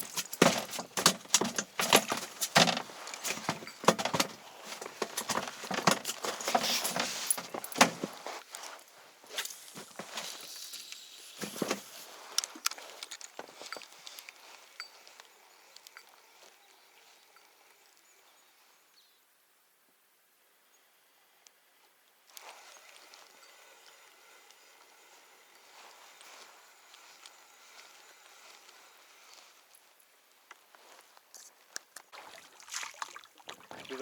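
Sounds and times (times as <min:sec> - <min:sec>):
knocks and clicks of handling: 0:00.0 - 0:08.2
rustling: 0:00.0 - 0:16.6.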